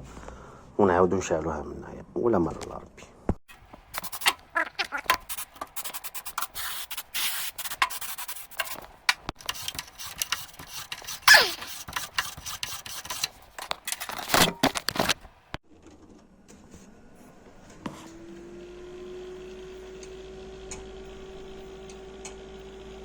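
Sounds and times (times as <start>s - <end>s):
rubbing metal contacts clean: 3.5s - 15.2s
short falling squeak: 11.0s - 11.8s.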